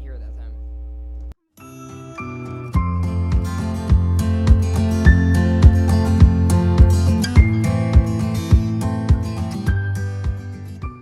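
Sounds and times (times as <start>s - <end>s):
mains hum: 0.0s - 1.4s
heavy beat with low thumps: 3.9s - 9.4s.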